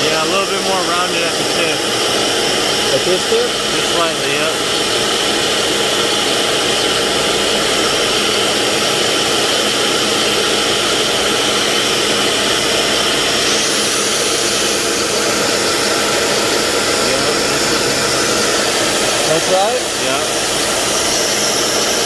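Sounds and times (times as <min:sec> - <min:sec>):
lathe whirring: 0:00.0 - 0:22.0
higher hiss: 0:12.8 - 0:22.0.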